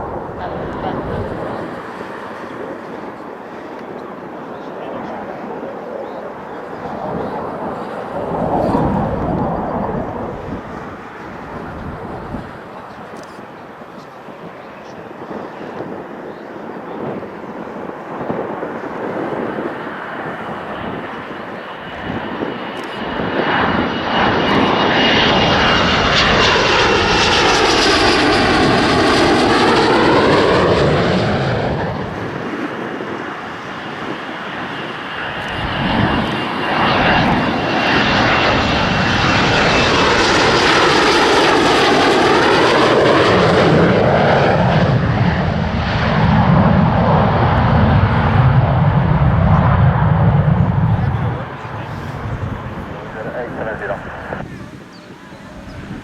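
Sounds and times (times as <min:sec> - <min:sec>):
jet aircraft passing: 0:00.0 - 0:56.0
high thin jet whine: 0:33.5 - 0:56.0.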